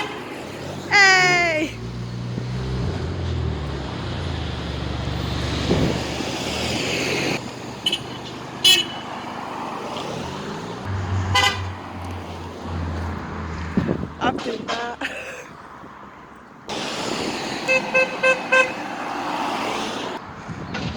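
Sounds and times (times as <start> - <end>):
car horn toots: 0.0 - 0.3, 7.8 - 9.2, 11.1 - 11.8, 17.7 - 18.8
road traffic passing: 0.0 - 20.9.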